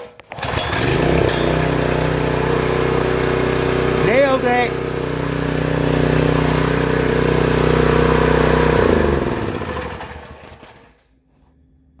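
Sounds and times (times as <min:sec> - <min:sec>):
small gas engine running: 0:00.3 - 0:11.0.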